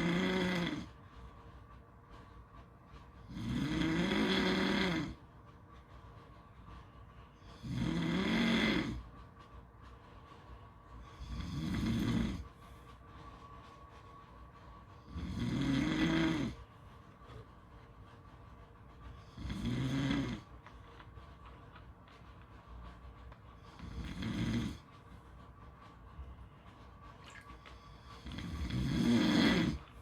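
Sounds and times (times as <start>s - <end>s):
snoring: 0.0s - 0.9s, 3.3s - 5.2s, 7.6s - 9.0s, 11.1s - 12.5s, 15.1s - 16.6s, 19.4s - 20.5s, 23.8s - 24.8s, 28.2s - 29.8s
faint steady hum: 0.0s - 30.0s.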